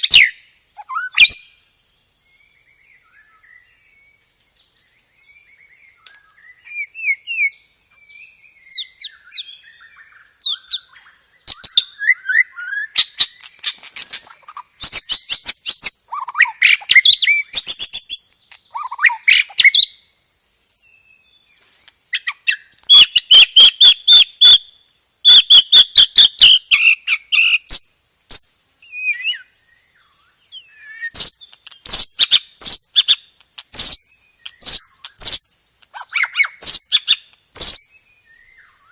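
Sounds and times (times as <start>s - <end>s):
bird singing whistled phrases: 0.0s - 1.6s, 5.2s - 13.5s, 14.8s - 20.0s, 22.2s - 27.9s, 28.8s - 38.9s
rapid rattling bird rolls: 13.3s - 14.5s.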